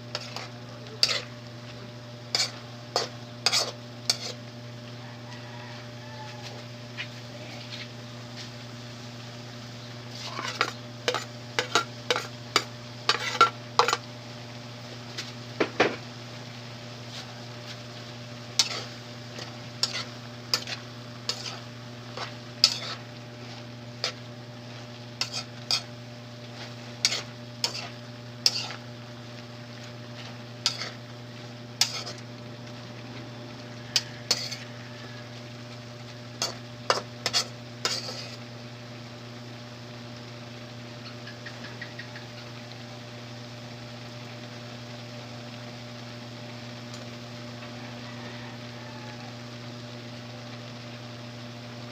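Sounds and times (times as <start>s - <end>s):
metal utensil scraping a pan: 0.1s - 1.4s, 2.3s - 4.4s, 10.1s - 14.0s, 18.6s - 24.2s, 25.2s - 25.9s, 26.5s - 28.8s, 30.2s - 31.0s, 31.8s - 32.2s, 33.9s - 34.8s, 36.4s - 38.4s
low hum: 6.8s - 43.2s.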